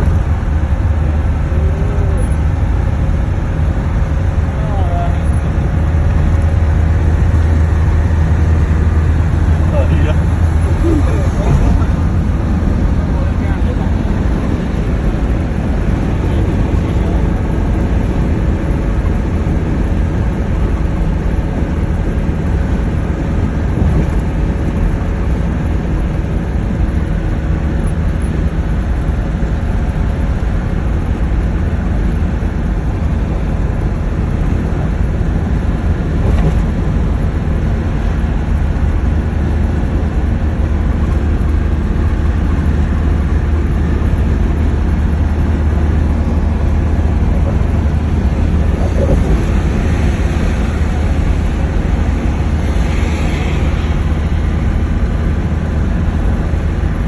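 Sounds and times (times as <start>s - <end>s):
loud low rumble: 0.0s - 26.9s, 33.0s - 57.0s
faint hums: 4.2s - 24.4s, 41.4s - 57.0s.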